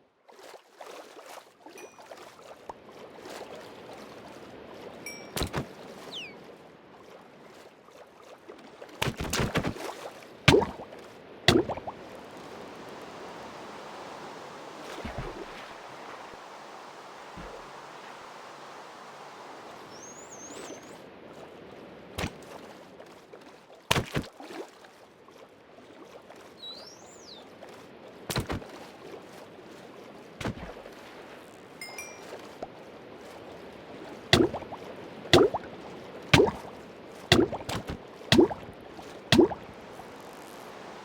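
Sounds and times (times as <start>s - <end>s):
outdoor background noise: 0.0s - 24.8s, 26.2s - 41.0s
bird chirps: 6.0s - 6.4s, 19.9s - 21.0s, 26.6s - 27.4s.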